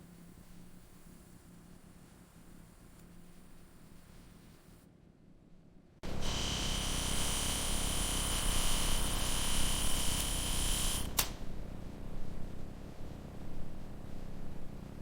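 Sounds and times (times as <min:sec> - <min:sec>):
machine hiss with high whine: 0:06.0 - 0:11.4
low machine hum: 0:06.0 - 0:15.0
sharp click: 0:11.0 - 0:11.4.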